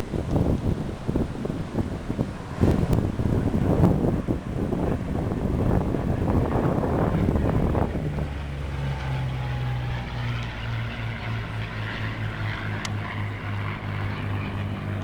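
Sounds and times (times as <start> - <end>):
distant propeller plane droning: 0.0 - 15.0
wind gust on microphone: 0.0 - 15.0.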